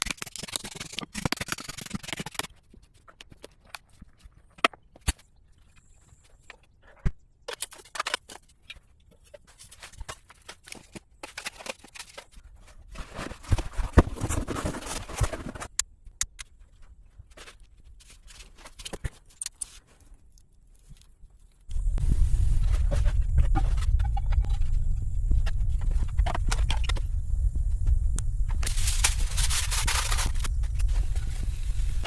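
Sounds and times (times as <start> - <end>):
scraping and rustling: 7.6 - 15.8, 28.6 - 32.0.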